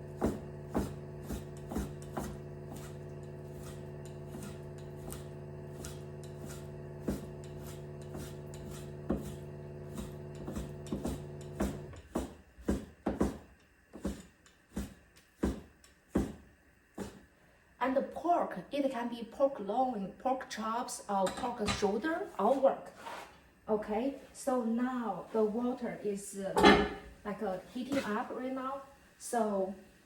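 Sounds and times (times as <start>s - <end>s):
steady low hum: 0.0s - 22.6s
knife chopping on cutting board: 0.2s - 16.4s, 17.0s - 17.2s.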